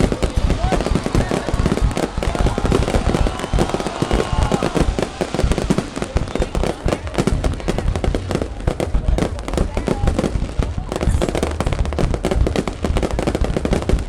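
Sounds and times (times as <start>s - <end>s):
faint firework whistles: 0.0s - 7.2s
fireworks cracks and bangs: 0.0s - 14.0s.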